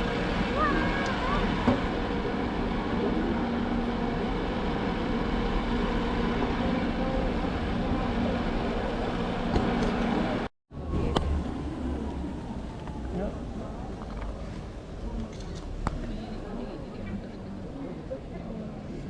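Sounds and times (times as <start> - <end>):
machinery hum and drone: 0.0 - 19.0.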